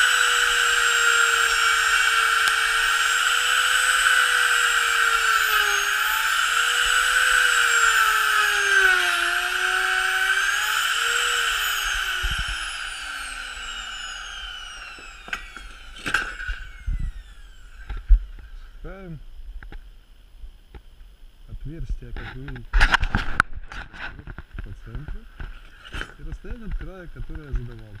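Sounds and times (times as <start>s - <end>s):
electric router whining: 0.0s - 19.0s.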